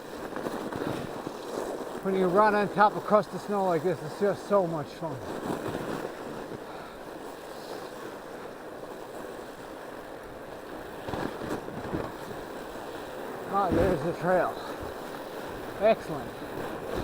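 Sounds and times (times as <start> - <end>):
bike tyres rolling over snow: 0.0 - 17.0.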